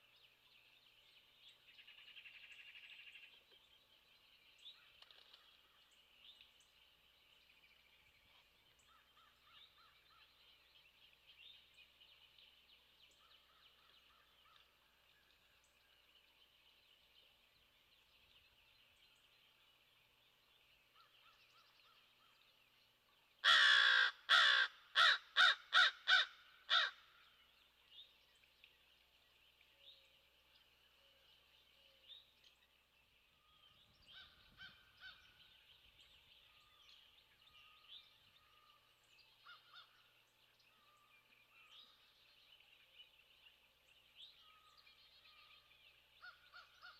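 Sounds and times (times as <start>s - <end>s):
crow cawing: 23.4s - 27.0s.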